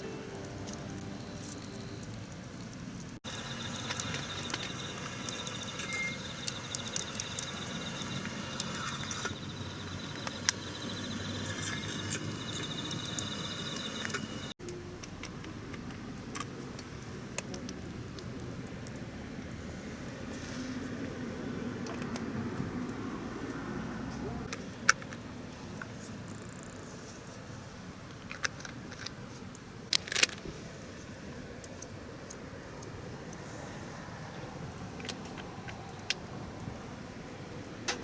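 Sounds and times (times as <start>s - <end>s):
high-pitched insect trill: 0.0s - 2.2s, 3.2s - 14.6s
campfire crackling and popping: 0.0s - 14.6s.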